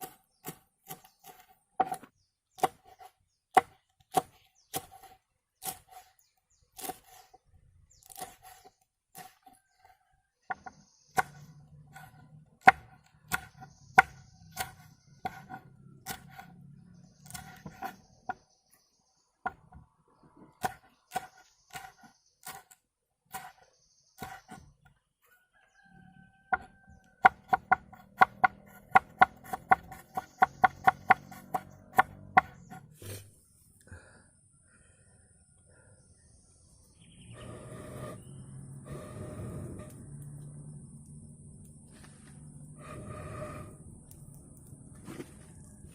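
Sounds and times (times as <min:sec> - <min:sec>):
knife chopping pumpkin: 0:00.0 - 0:06.1, 0:06.8 - 0:07.4, 0:08.0 - 0:09.8, 0:10.5 - 0:16.6, 0:17.2 - 0:18.4, 0:20.5 - 0:23.6, 0:24.2 - 0:24.8, 0:26.5 - 0:33.2.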